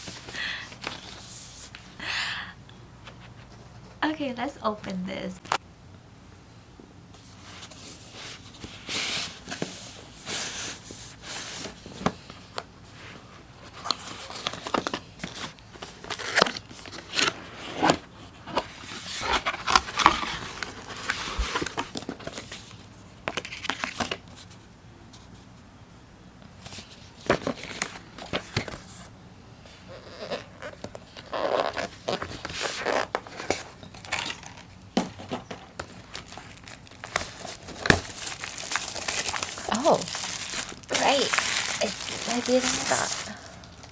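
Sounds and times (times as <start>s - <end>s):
packaging tearing and crinkling: 13.8s - 18.0s, 18.7s - 22.6s, 30.3s - 43.9s.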